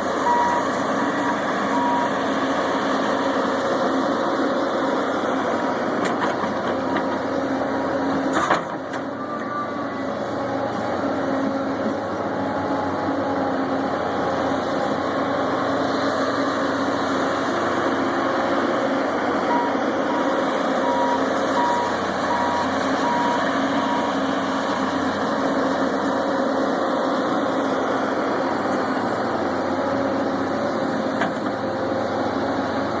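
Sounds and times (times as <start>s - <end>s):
excavator diesel engine running: 0.0s - 33.0s
travel alarm beeping: 0.2s - 2.1s.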